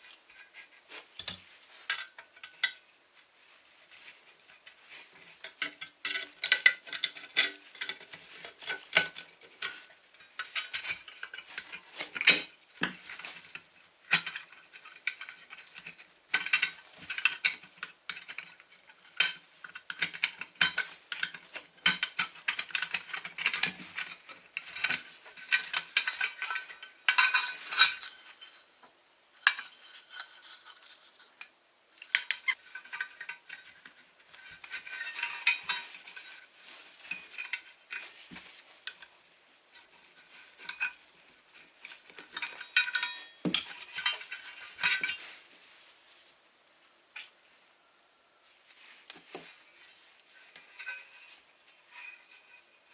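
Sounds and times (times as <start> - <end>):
metal clinking and tapping: 29.4 - 36.4, 41.8 - 45.3.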